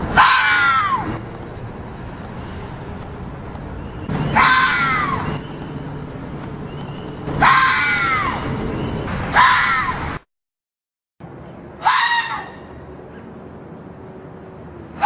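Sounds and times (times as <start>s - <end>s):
fox screams: 0.1s - 1.2s, 4.1s - 5.5s, 7.3s - 8.5s, 9.3s - 10.1s, 11.8s - 12.7s.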